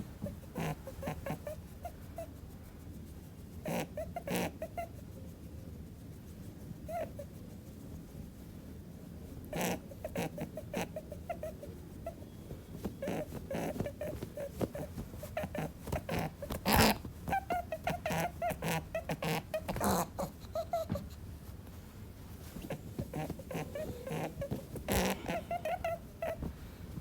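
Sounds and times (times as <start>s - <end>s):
rabbit squeaking: 0.0s - 2.4s, 3.6s - 5.1s, 6.8s - 7.4s, 9.5s - 21.7s, 22.4s - 27.0s.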